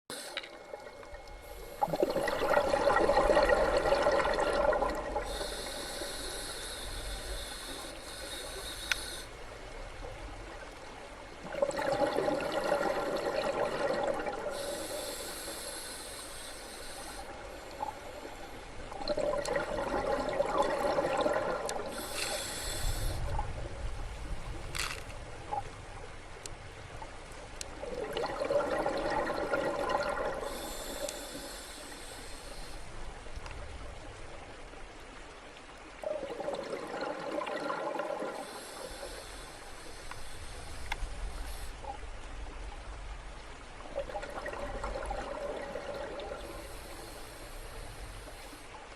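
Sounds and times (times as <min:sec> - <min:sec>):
bubbling underwater exhale: 0:00.1 - 0:09.2, 0:11.4 - 0:23.7, 0:27.8 - 0:32.3, 0:36.0 - 0:39.5, 0:43.9 - 0:48.4
hissing regulator inhale: 0:05.2 - 0:09.4, 0:14.4 - 0:18.8, 0:21.6 - 0:23.4, 0:30.2 - 0:32.9, 0:38.3 - 0:41.9, 0:46.3 - 0:48.8.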